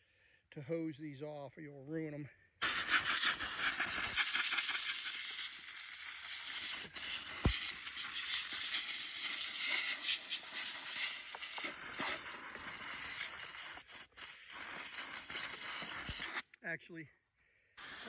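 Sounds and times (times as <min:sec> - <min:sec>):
compressed air nozzle hissing: 0:02.6 - 0:16.4, 0:17.8 - 0:18.0.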